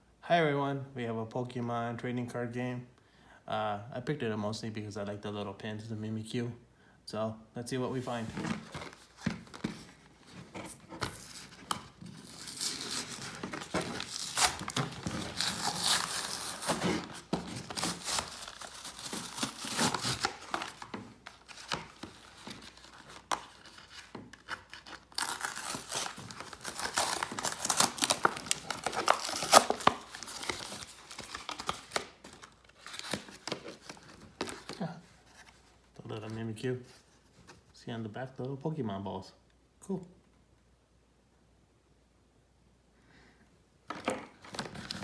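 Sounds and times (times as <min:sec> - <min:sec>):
packaging torn and crinkled: 0:11.0 - 0:34.7.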